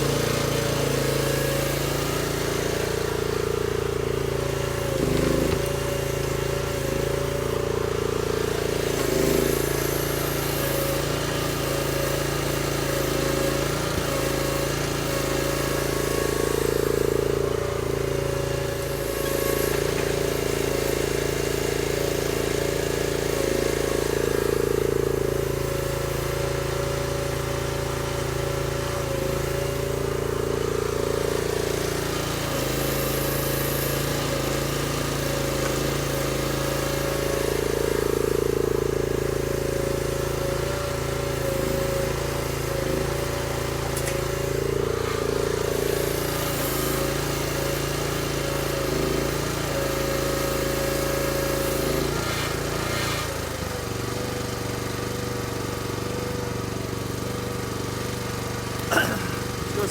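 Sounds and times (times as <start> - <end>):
excavator engine running: 2.1 - 10.7, 58.0 - 59.9.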